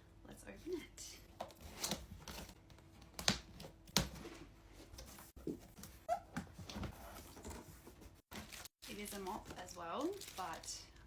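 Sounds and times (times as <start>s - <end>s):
packaging rustling: 6.9s - 11.0s.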